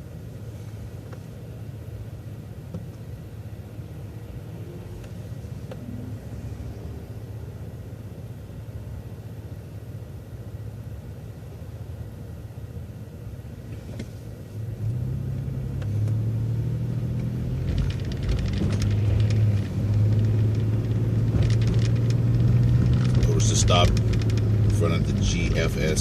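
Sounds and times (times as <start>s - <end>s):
bus engine and road rumble: 0.0s - 26.0s
light rattling clicks: 17.2s - 25.6s.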